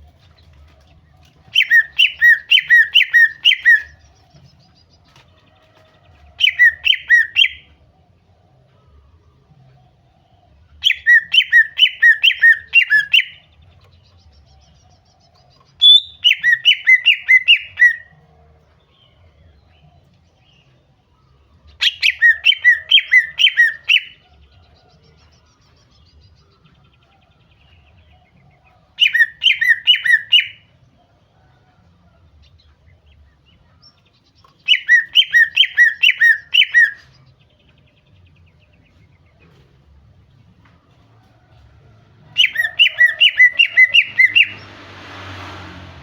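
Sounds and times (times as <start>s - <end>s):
bird whistled calls: 1.5s - 4.0s, 6.4s - 7.7s, 10.8s - 13.4s, 15.8s - 18.1s, 21.8s - 24.2s, 29.0s - 30.6s, 34.6s - 37.2s, 42.4s - 44.6s.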